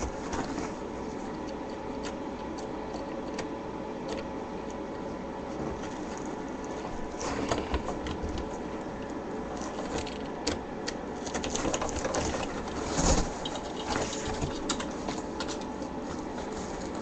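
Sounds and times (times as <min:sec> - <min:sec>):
cardboard scraping and rustling: 0:00.0 - 0:01.2, 0:05.5 - 0:08.8, 0:11.3 - 0:17.0.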